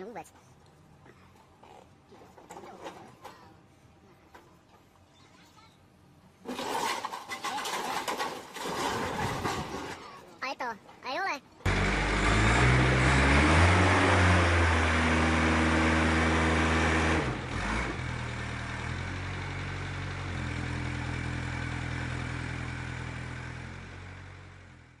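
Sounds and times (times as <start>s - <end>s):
heavy engine running: 11.6s - 25.0s.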